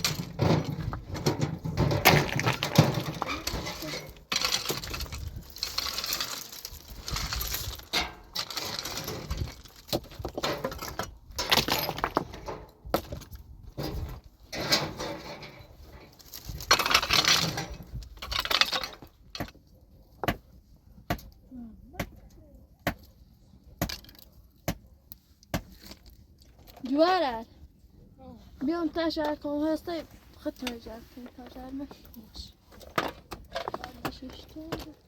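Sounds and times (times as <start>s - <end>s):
stones and gravel scraping: 0.0s - 19.6s, 29.5s - 35.0s.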